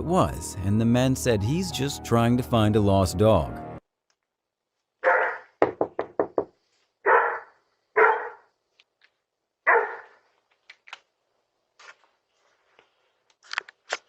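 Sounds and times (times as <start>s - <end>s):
dog barking: 5.0s - 5.5s, 7.0s - 8.5s, 9.7s - 10.2s.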